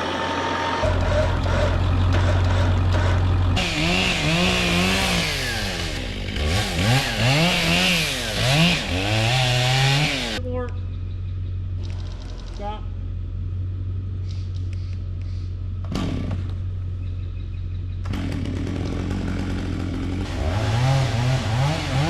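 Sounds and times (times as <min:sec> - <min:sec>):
low engine hum: 0:00.0 - 0:22.0
chainsaw cutting wood: 0:00.8 - 0:10.4, 0:15.9 - 0:16.6, 0:18.0 - 0:22.0.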